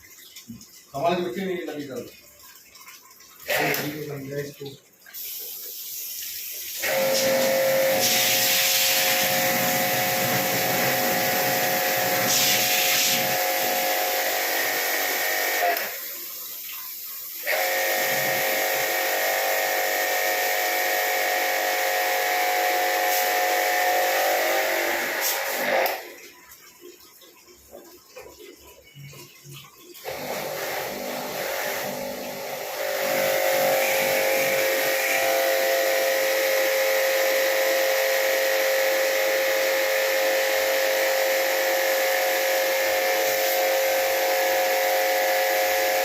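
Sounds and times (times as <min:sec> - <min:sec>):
water spray hissing: 0:05.1 - 0:14.4, 0:23.0 - 0:24.3, 0:25.2 - 0:25.9, 0:43.2 - 0:43.9
pressure washer motor whine: 0:06.8 - 0:16.0, 0:17.4 - 0:26.2, 0:30.0 - 0:46.0.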